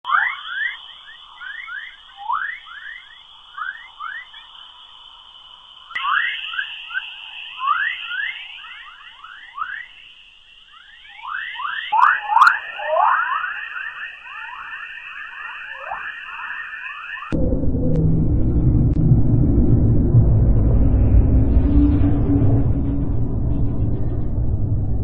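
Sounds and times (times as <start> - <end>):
steady high hiss: 0.1 - 17.4.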